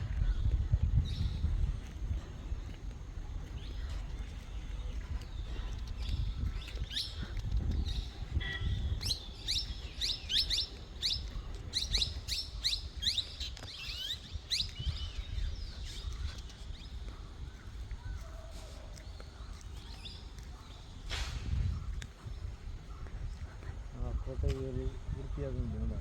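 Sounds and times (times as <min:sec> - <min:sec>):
low rumble: 0:00.0 - 0:18.3
small birds chirping: 0:00.0 - 0:26.0.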